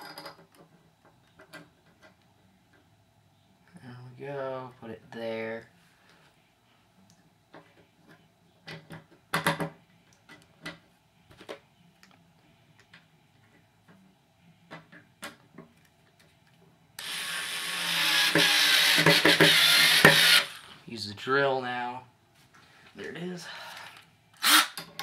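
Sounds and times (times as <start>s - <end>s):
cordless drill running: 17.0s - 20.7s, 24.4s - 24.8s.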